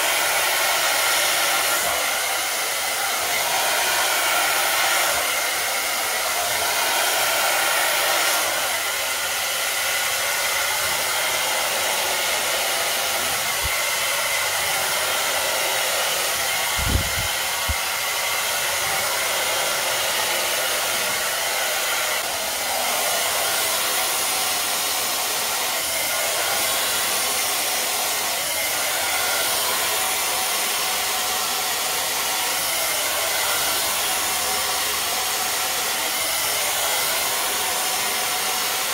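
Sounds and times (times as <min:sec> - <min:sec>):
hair dryer blowing: 0:00.0 - 0:38.9.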